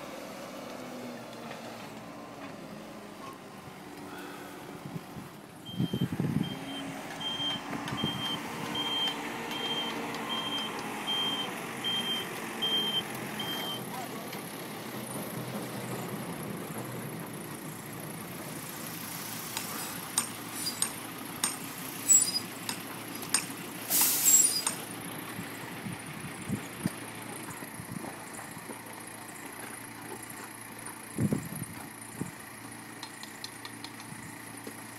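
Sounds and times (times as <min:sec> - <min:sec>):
truck engine running: 0:00.0 - 0:34.9
truck reversing alarm beeping: 0:02.0 - 0:04.4, 0:05.6 - 0:14.0, 0:20.2 - 0:22.7.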